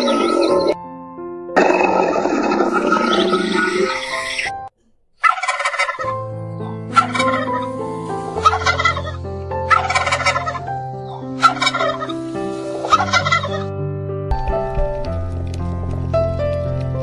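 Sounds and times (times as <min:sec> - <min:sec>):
background music with held notes: 0:05.6 - 0:17.0.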